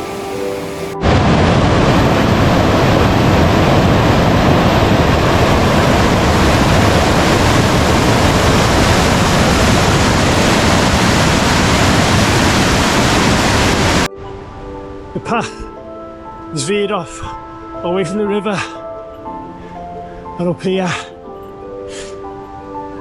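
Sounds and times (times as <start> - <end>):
river water rushing: 0.0 - 14.1.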